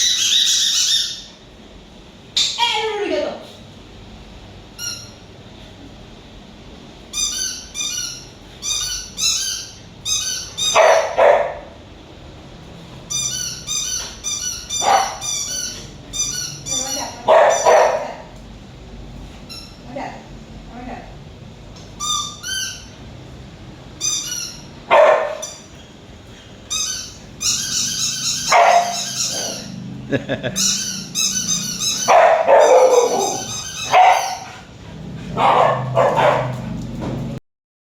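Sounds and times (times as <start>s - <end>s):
pet toy warbling chirps: 0.0s - 1.3s, 26.7s - 29.8s, 30.6s - 34.5s
dog barking: 10.7s - 11.8s, 14.8s - 15.3s, 17.2s - 18.3s, 24.9s - 25.6s, 28.4s - 29.7s, 32.0s - 34.7s, 35.3s - 36.7s.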